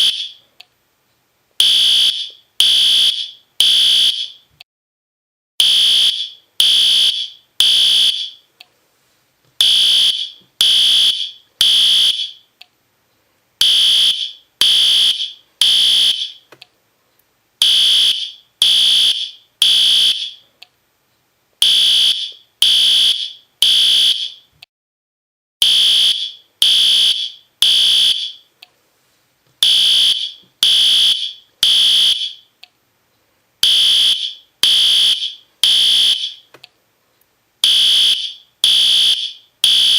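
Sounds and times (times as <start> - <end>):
fire alarm horn beeping: 0.0 - 0.4, 1.6 - 4.4, 5.6 - 8.5, 9.6 - 12.5, 13.6 - 16.4, 17.6 - 20.4, 21.6 - 24.5, 25.6 - 28.5, 29.6 - 32.5, 33.6 - 36.5, 37.6 - 39.9.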